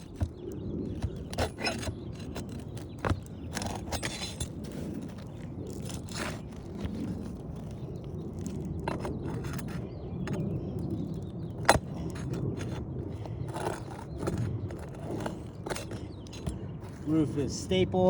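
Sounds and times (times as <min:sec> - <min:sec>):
roof shingles scraping and clicking: 0:00.0 - 0:17.4
shingle cracking: 0:00.0 - 0:17.4.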